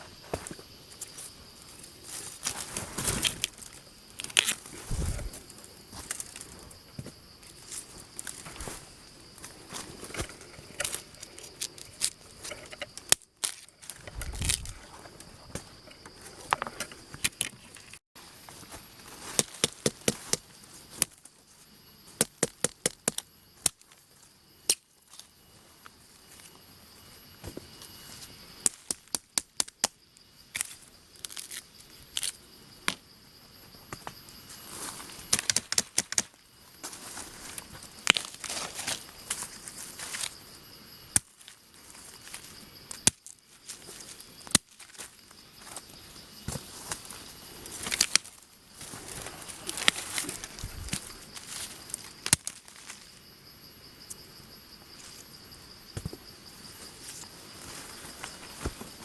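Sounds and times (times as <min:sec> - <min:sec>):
high-pitched insect drone: 0:00.0 - 0:59.0
crop plants snapping: 0:04.2 - 0:05.4, 0:13.1 - 0:14.8, 0:35.3 - 0:36.3, 0:47.8 - 0:48.3, 0:52.0 - 0:52.6.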